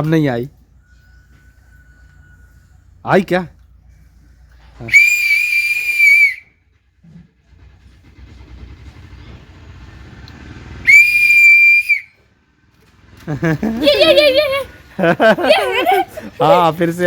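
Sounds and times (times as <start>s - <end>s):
whistle blasts: 4.8s - 6.7s, 10.8s - 12.2s.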